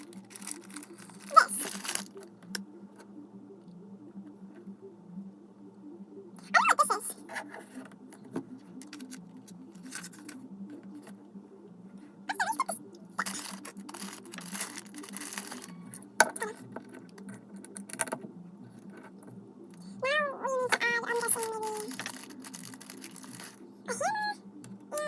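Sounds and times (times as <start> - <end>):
plastic pieces clicking and rattling: 0.1 - 2.1, 13.2 - 16.4, 21.2 - 23.6.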